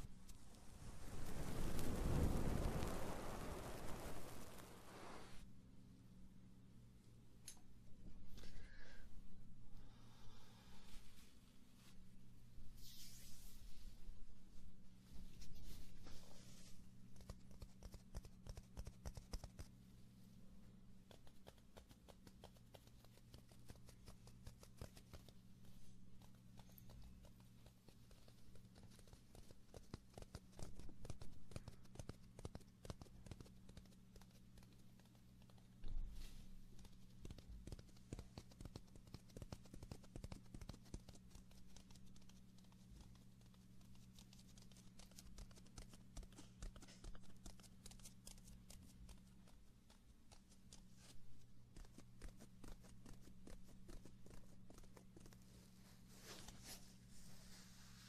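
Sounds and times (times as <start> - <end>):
steady low hum: 0.0 - 58.0
small clicks and crackles: 0.2 - 5.2, 21.0 - 56.8.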